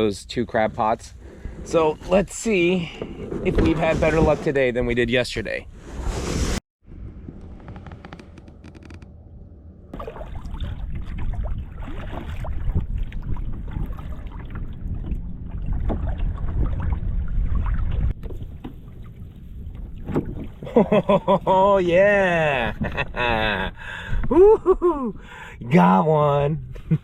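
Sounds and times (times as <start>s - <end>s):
kayak moving through water: 9.9s - 20.8s
wind rumbling on microphone: 10.1s - 20.8s.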